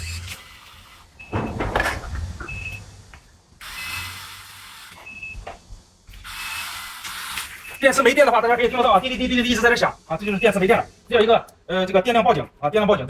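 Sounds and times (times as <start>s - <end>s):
electric drive whirring: 0.0s - 11.7s
loud clunks of excavator arm: 1.2s - 3.1s.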